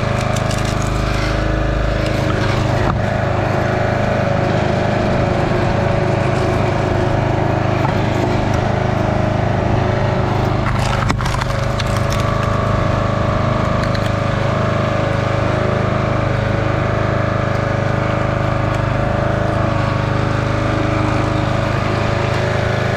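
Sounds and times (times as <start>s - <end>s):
firewood splitting crack: 0.0s - 3.4s, 9.9s - 14.6s
small gas engine running: 0.0s - 22.9s.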